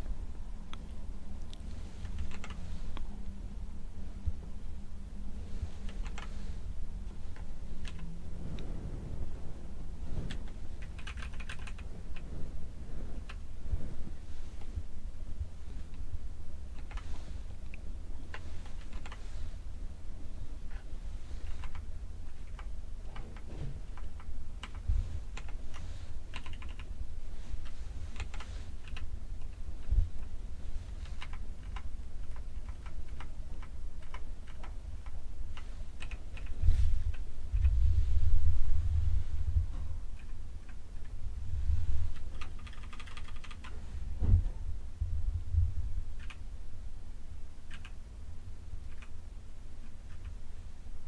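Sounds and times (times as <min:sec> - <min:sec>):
low rumble: 0:00.0 - 0:47.5
steady low hum: 0:00.0 - 0:51.0
mechanical keyboard clicks: 0:02.0 - 0:02.6, 0:05.9 - 0:06.3, 0:07.4 - 0:08.0, 0:10.3 - 0:12.2, 0:16.8 - 0:17.0, 0:18.3 - 0:19.2, 0:21.4 - 0:21.8, 0:22.4 - 0:24.8, 0:26.3 - 0:26.9, 0:28.2 - 0:29.5, 0:31.1 - 0:35.2, 0:36.0 - 0:36.5, 0:42.3 - 0:43.7, 0:46.2 - 0:46.4, 0:47.7 - 0:48.0
dull thump: 0:44.2 - 0:44.6.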